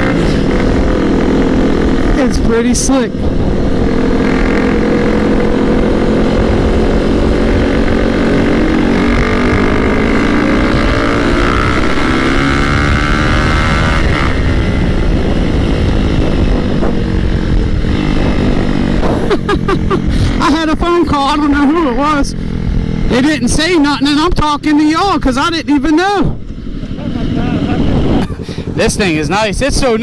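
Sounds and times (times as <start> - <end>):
motorcycle engine revving: 0.0 - 30.0
wind rush on microphone: 0.0 - 30.0.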